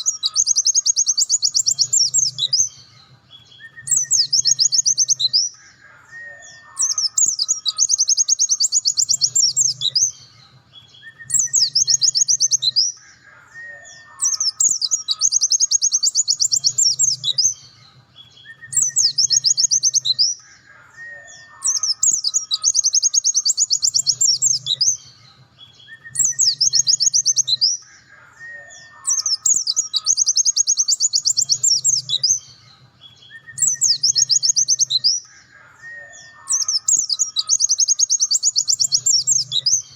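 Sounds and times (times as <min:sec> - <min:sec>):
bird singing fast high trills: 0:33.2 - 0:39.9.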